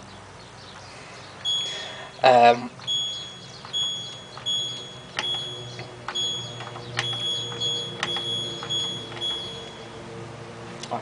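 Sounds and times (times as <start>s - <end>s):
washing machine short high beeps: 1.4s - 2.1s, 2.8s - 9.9s.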